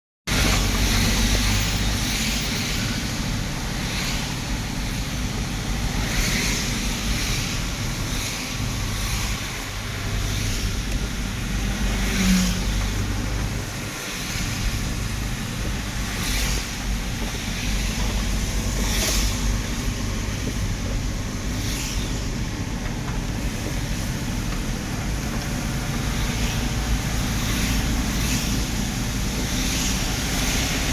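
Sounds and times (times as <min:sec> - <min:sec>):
car engine and road rumble: 0:00.3 - 0:30.9
rain hiss: 0:00.3 - 0:30.9.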